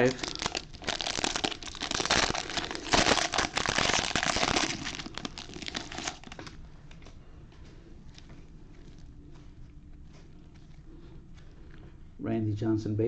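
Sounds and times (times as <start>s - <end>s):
wrapper tearing and crinkling: 0.0s - 6.6s.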